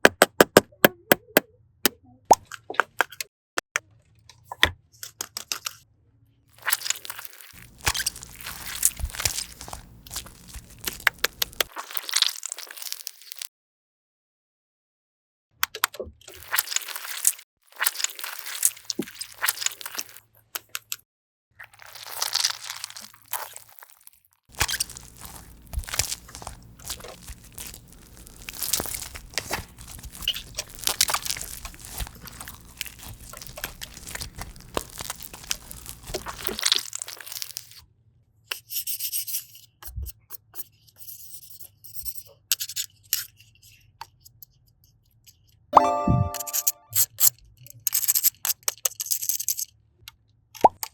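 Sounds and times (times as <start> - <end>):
crunchy material crunching by hand: 6.6 - 13.5, 16.4 - 20.2, 21.6 - 37.8.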